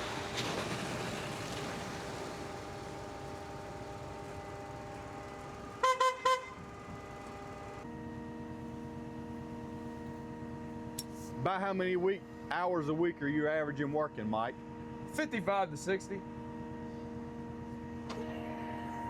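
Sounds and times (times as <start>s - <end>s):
steady multi-tone hum: 0.0s - 19.0s
vehicle horn honks: 5.8s - 6.6s.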